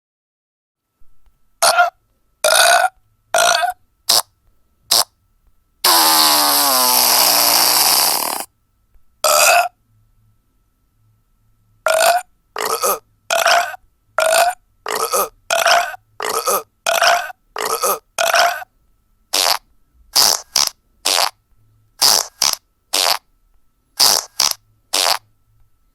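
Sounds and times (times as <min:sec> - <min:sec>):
burp sound effects: 0:01.6 - 0:04.3, 0:05.8 - 0:08.5, 0:09.2 - 0:09.8, 0:11.9 - 0:18.7, 0:19.4 - 0:19.6, 0:20.2 - 0:21.4, 0:22.0 - 0:23.2, 0:24.0 - 0:25.2.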